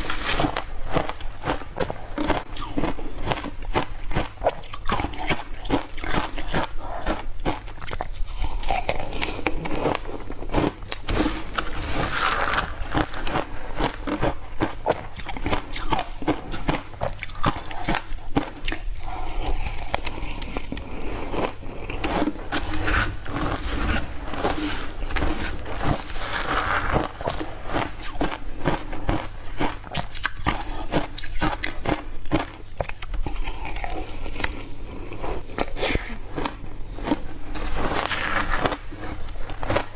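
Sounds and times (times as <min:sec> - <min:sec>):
ice crunching between teeth: 0:00.0 - 0:39.9.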